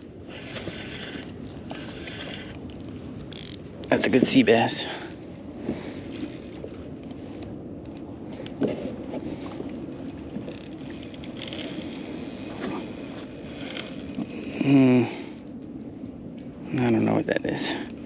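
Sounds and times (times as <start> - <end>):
fishing reel gears whirring: 0.3 - 4.4, 5.8 - 7.2, 7.8 - 8.0, 9.6 - 16.1.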